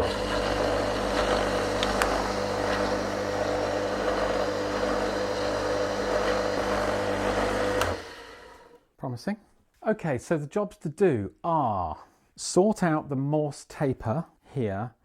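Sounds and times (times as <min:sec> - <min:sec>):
lathe motor humming: 0:00.0 - 0:08.7.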